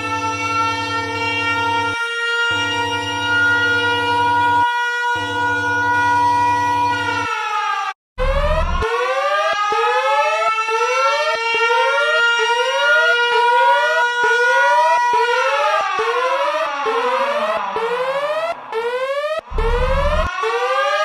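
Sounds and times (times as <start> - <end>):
siren-like glides: 0.0 - 21.0
rising electronic alarm sweeps: 8.2 - 9.4, 15.5 - 21.0
held alarm tone chord: 17.0 - 20.3
short low buzz: 19.5 - 20.3.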